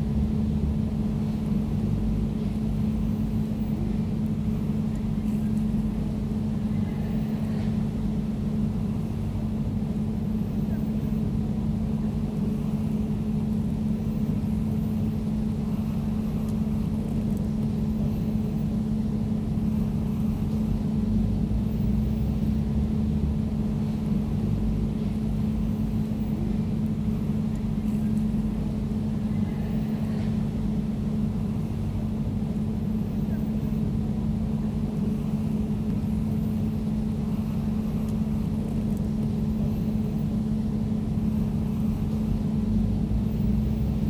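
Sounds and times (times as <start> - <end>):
air conditioner humming: 0.0 - 44.0.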